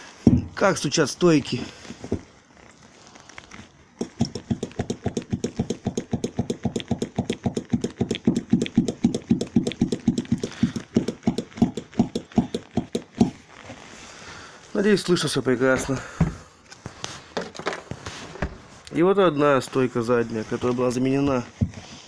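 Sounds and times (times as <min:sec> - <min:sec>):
shock absorber knocking: 0:04.0 - 0:13.4.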